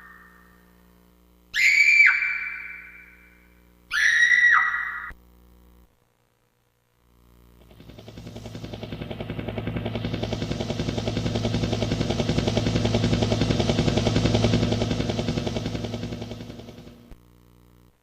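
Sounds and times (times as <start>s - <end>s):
helicopter sound effect: 7.6s - 17.1s.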